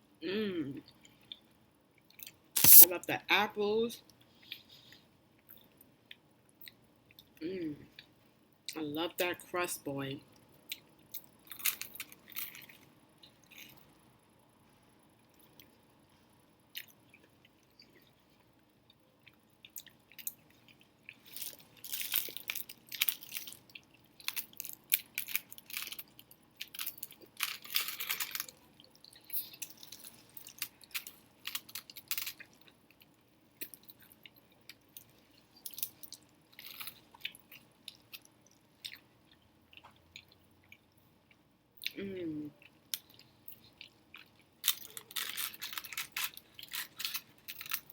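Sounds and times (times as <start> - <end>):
chewing apple pie: 42.6 - 47.9.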